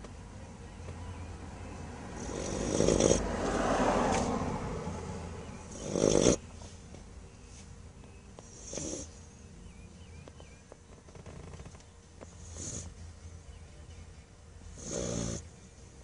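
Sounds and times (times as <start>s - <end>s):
dog snoring: 2.1s - 3.8s, 5.6s - 6.4s, 8.4s - 9.4s, 11.0s - 13.0s, 14.7s - 15.8s.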